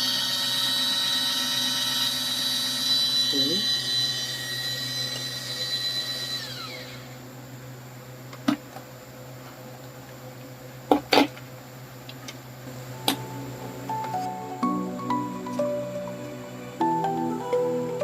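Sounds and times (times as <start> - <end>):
small electric motor whining: 0.0 - 7.3.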